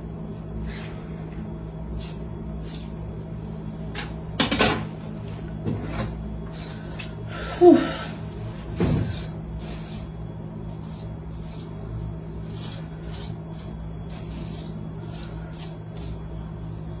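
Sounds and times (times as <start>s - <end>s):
steady low hum: 0.0s - 17.0s
rustling and rubbing scrapes: 8.3s - 17.0s.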